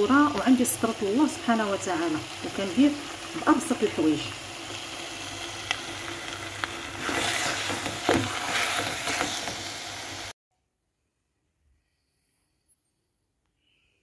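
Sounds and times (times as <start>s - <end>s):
food sizzling in a pan: 0.0s - 10.4s.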